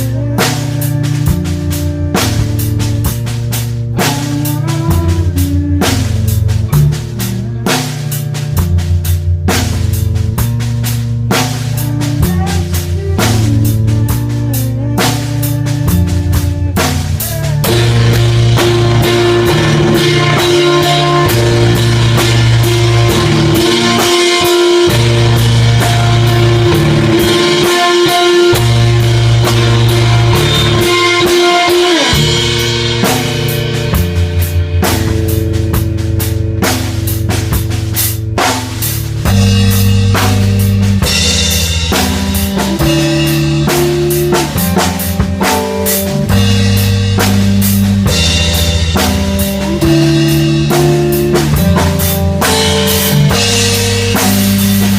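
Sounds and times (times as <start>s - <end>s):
drum kit: 0.0s - 54.9s
rock band music: 0.0s - 54.9s.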